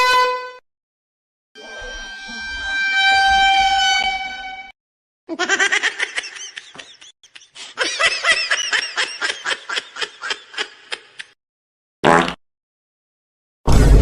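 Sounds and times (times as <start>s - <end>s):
high-pitched laughter: 5.3s - 11.4s.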